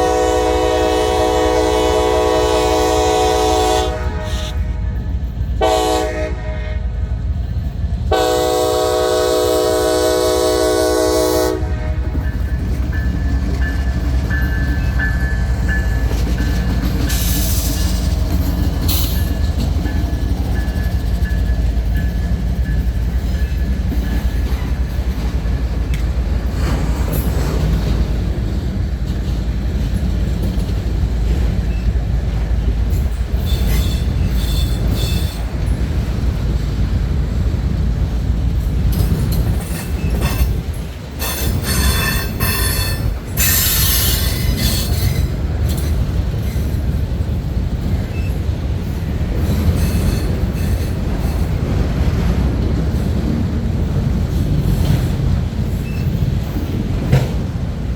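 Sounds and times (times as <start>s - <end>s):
train wheels rumbling on rail: 0.0s - 57.9s
train wheels screeching: 12.1s - 28.1s, 31.6s - 35.8s, 38.7s - 51.6s, 54.3s - 56.9s.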